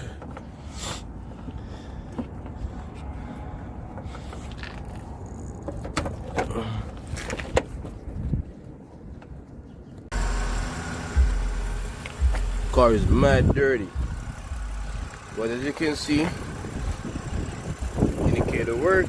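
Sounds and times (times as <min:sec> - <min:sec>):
low steady rumble: 0:10.1 - 0:19.0.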